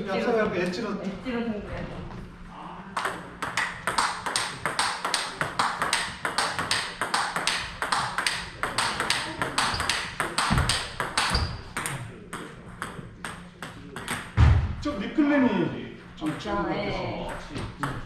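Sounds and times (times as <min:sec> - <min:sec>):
table tennis ball clicks: 0:03.0 - 0:12.0.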